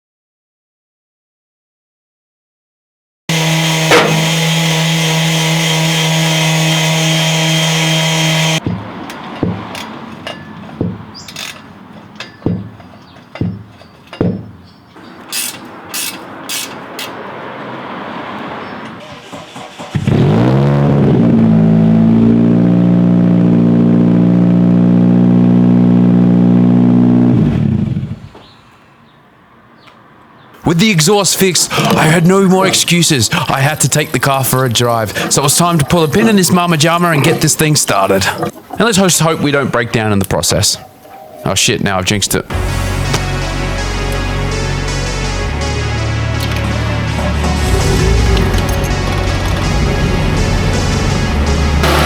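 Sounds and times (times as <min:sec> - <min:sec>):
knocks and clanks: 0:03.3 - 0:06.9, 0:07.8 - 0:17.2, 0:18.8 - 0:20.2, 0:47.6 - 0:52.0
motor running: 0:03.3 - 0:08.6, 0:20.1 - 0:28.4, 0:47.5 - 0:52.0
motor spinning up: 0:03.3 - 0:08.6, 0:47.6 - 0:52.0.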